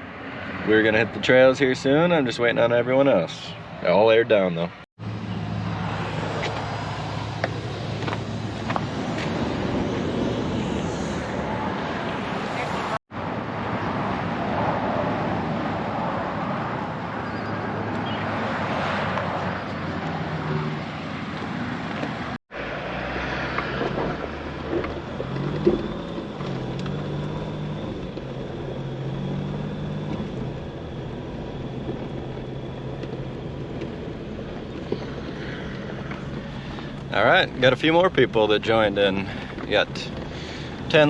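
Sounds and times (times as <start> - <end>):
road noise: 0.0 - 41.0
wind: 0.0 - 41.0
vehicle engine running: 5.0 - 12.9, 23.6 - 41.0.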